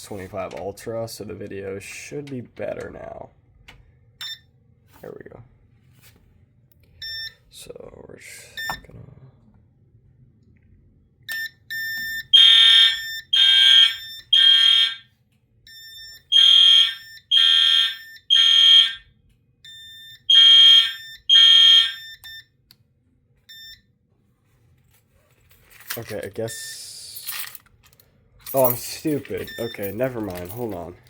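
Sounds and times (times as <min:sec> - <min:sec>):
quieter clean-toned alarm horn: 0:11.8 - 0:15.1, 0:15.8 - 0:19.1, 0:19.7 - 0:22.4
loud harsh fire alarm horn blasts: 0:12.1 - 0:15.1, 0:16.3 - 0:19.1, 0:20.2 - 0:22.2.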